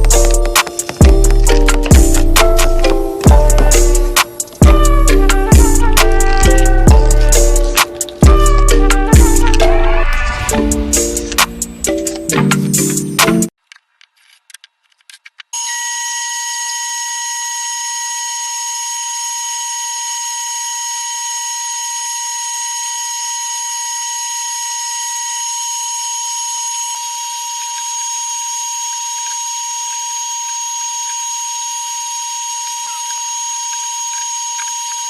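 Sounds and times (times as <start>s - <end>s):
power tool whining: 0.0s - 12.3s, 15.6s - 35.0s.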